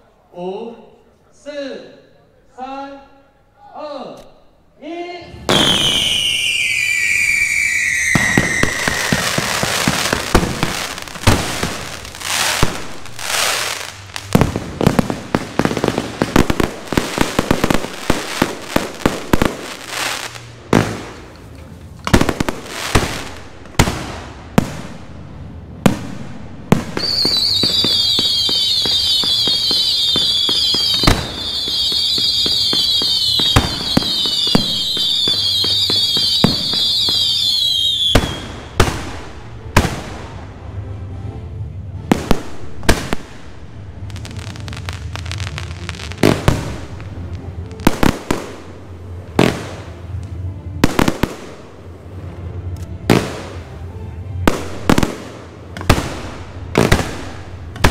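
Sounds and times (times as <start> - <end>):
falling firework whistle: 5.5 - 10.3, 27.0 - 38.6
shrill warbling whistles: 5.6 - 9.5, 27.0 - 38.4.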